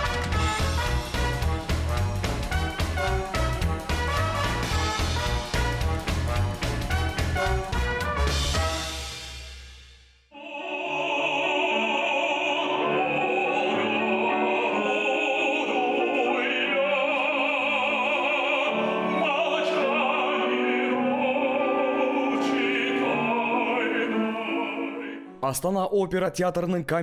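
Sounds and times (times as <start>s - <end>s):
instrumental accompaniment: 0.0s - 10.0s
operatic singing: 10.3s - 25.7s.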